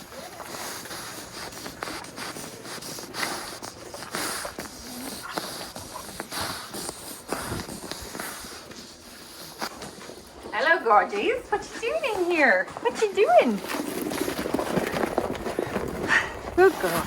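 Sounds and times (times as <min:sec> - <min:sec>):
sheep snorting: 0:00.0 - 0:17.0
sheep hoof steps: 0:09.6 - 0:17.0.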